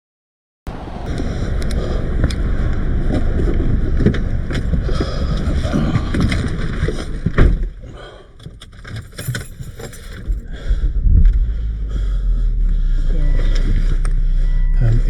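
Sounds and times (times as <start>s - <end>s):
wind noise: 0.7s - 7.8s
car engine starting and idling: 0.7s - 7.9s, 8.5s - 15.0s.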